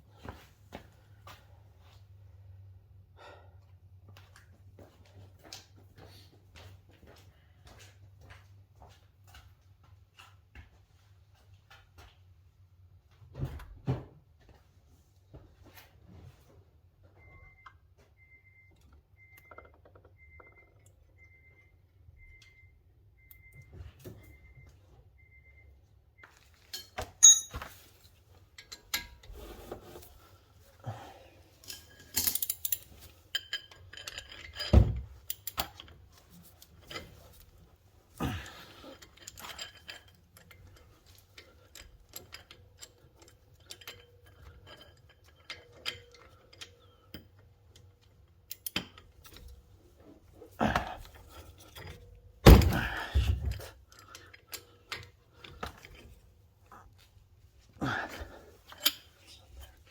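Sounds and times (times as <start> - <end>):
tools clinking and clanking: 26.4 - 30.3, 31.5 - 59.9
heavy metal thunks: 52.4 - 53.5.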